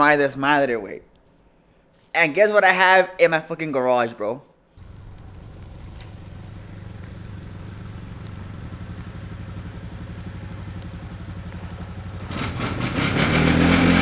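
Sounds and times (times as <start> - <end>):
atv engine idling: 4.8 - 14.0.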